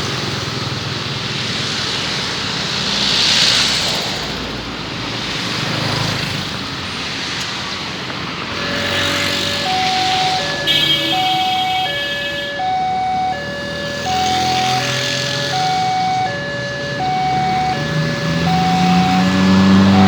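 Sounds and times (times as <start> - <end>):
two-tone level crossing siren: 8.5 - 20.0.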